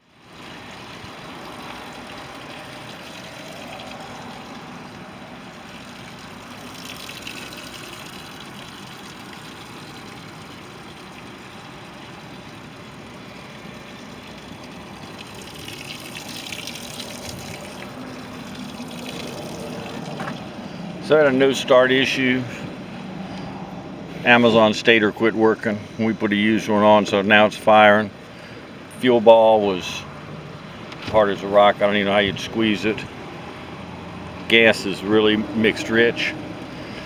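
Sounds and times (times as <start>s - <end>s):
churning water: 0.0s - 37.0s
outboard motor running: 0.0s - 37.0s.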